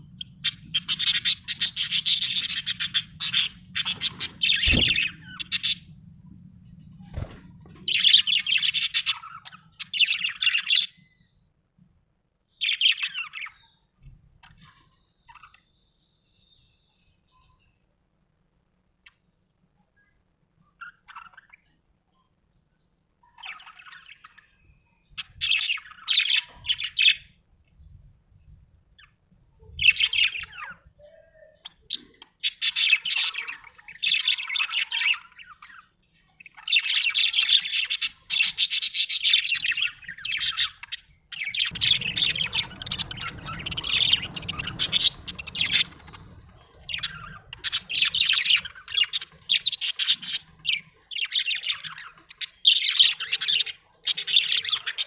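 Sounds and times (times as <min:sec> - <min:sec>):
budgerigar chirping and chattering: 0:00.1 - 0:05.8, 0:31.7 - 0:35.8, 0:36.4 - 0:55.0.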